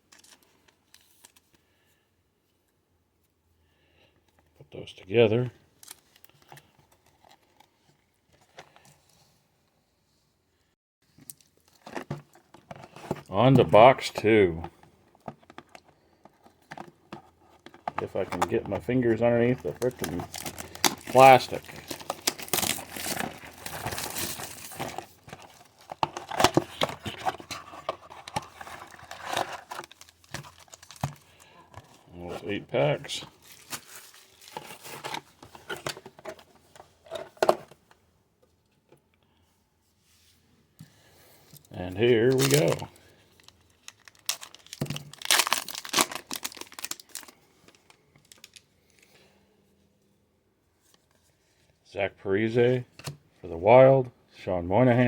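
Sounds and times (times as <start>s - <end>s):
cards rustling: 11.4s - 37.6s, 41.6s - 49.2s
plastic shrink-wrap crinkling: 19.2s - 31.6s, 33.0s - 35.2s, 42.2s - 49.0s.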